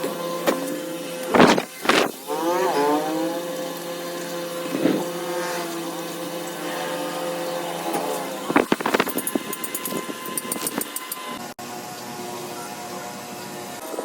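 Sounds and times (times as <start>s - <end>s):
motor humming: 1.3s - 2.3s, 8.4s - 10.9s.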